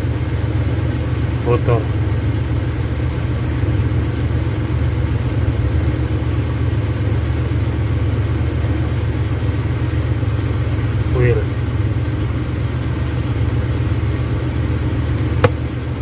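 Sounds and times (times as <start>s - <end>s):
low mechanical drone: 0.0s - 16.0s.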